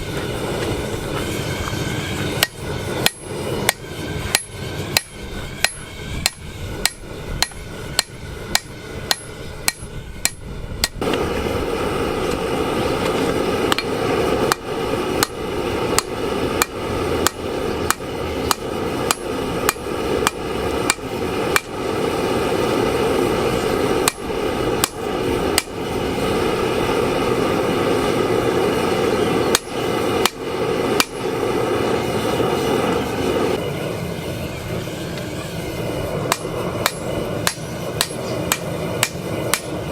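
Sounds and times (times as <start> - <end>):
steady rushing noise: 0.0 - 39.9
hammer striking steel on anvil: 2.2 - 11.2, 13.1 - 22.2, 23.5 - 25.8, 29.4 - 31.3, 36.3 - 39.8.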